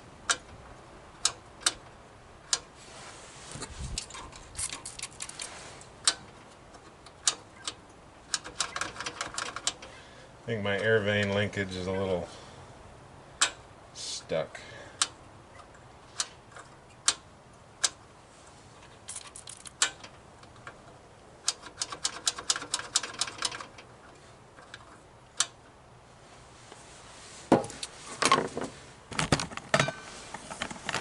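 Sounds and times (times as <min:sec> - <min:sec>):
hand tools clicking on metal: 0:03.9 - 0:09.9.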